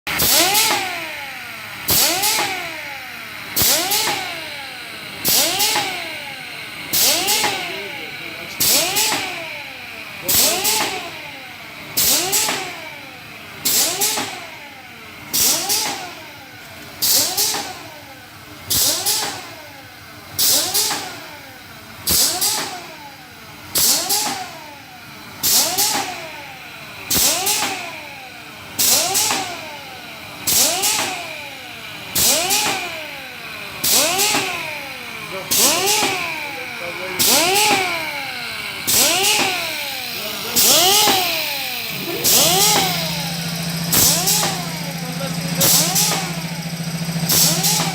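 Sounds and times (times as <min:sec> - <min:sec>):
filling machine hiss: 0:38.9 - 0:47.9
rising and falling machine tone: 0:40.6 - 0:47.9.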